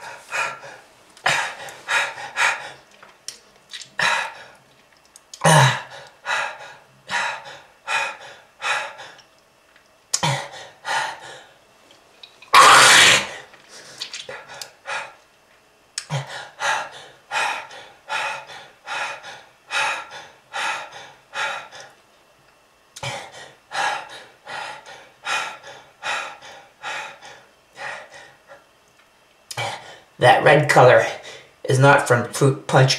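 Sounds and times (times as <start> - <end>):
harsh coughing: 12.6 - 13.4.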